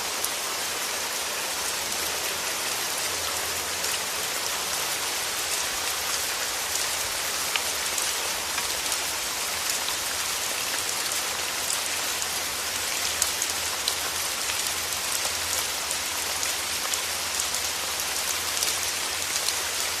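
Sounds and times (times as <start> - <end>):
heavy rain falling: 0.0 - 20.0.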